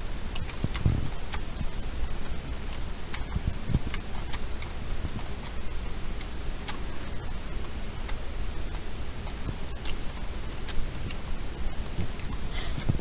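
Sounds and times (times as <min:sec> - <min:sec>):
steady background hiss: 0:00.0 - 0:13.0.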